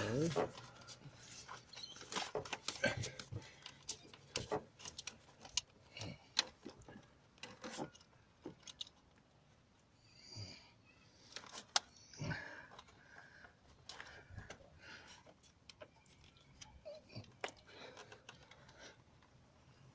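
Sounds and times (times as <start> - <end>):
breaths of effort: 12.0 - 15.4, 17.0 - 19.2.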